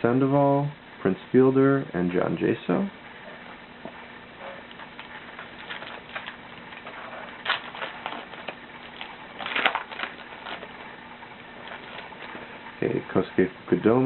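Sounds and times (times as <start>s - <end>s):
foil wrapper crinkling and tearing: 4.7s - 12.5s.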